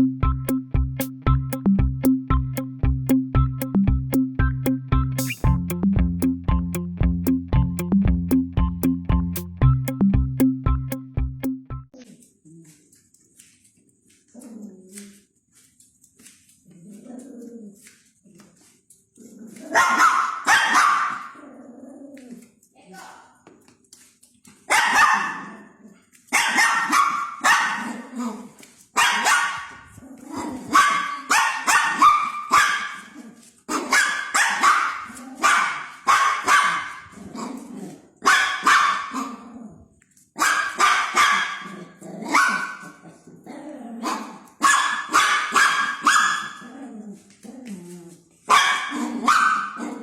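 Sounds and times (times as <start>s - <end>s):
dog barking: 19.7s - 21.4s, 24.7s - 25.7s, 26.3s - 29.8s, 30.4s - 37.6s, 38.2s - 39.4s, 40.4s - 43.0s, 44.0s - 46.6s, 48.5s - 50.0s.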